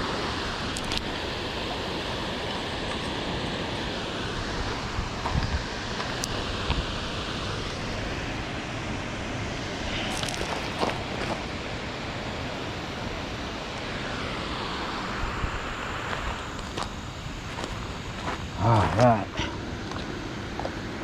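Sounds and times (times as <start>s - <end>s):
wind buffeting microphone: 0.0s - 14.0s
wind: 0.0s - 21.0s.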